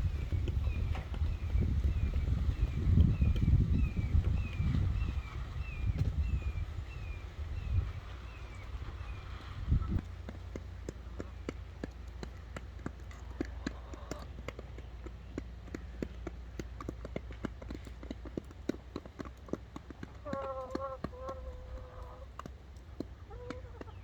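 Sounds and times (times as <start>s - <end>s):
beaks tapping on ground: 0.0s - 24.0s
chicken clucking: 20.0s - 22.5s, 23.2s - 24.0s.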